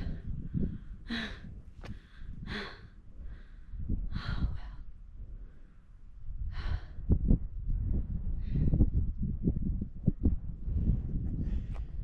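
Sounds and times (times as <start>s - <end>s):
woman breathing hard: 0.0s - 5.7s, 6.4s - 7.2s.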